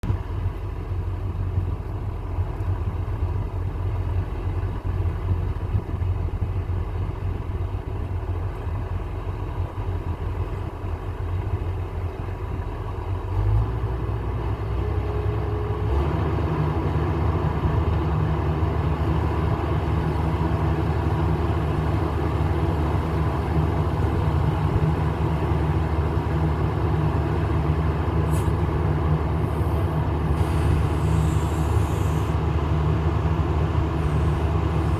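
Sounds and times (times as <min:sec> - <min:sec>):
sprayer diesel engine running: 0:13.9 - 0:34.9.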